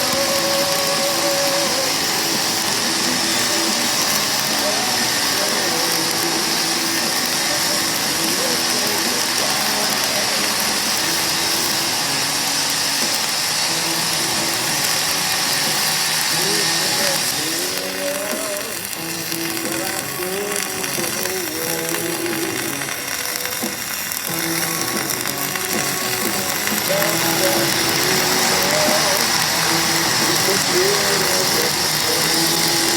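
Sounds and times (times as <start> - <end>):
faint voices or radio: 0.0 - 32.9
welding arc crackling and hissing: 0.0 - 32.9.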